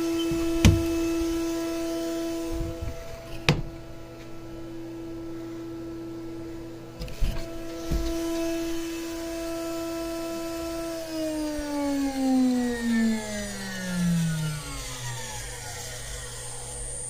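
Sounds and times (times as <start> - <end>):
router spindle whining: 0.0 - 3.5, 7.1 - 17.0
low steady hum: 0.0 - 11.1.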